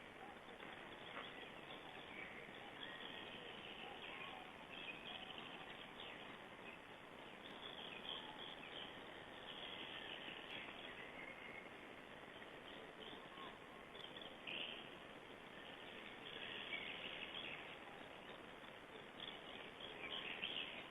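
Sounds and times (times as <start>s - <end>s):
distant small birds chirping: 0.0s - 20.9s
steady hiss: 0.0s - 20.9s.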